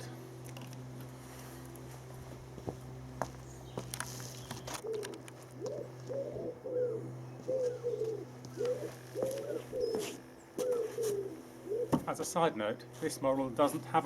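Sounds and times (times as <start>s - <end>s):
steady low hum: 0.0s - 14.0s
pigeon cooing: 4.7s - 12.0s.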